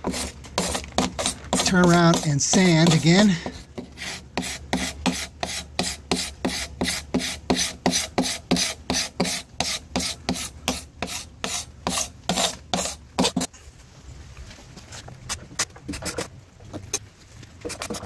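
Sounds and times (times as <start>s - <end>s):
scraper scraping resin off wood: 0.0s - 13.5s, 17.6s - 18.0s.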